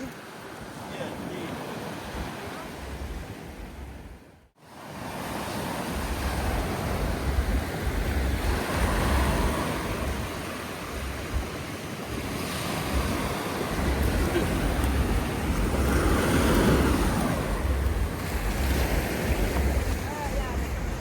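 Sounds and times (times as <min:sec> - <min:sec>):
ocean surf washing in: 0:00.0 - 0:21.0
wind buffeting microphone: 0:05.3 - 0:21.0.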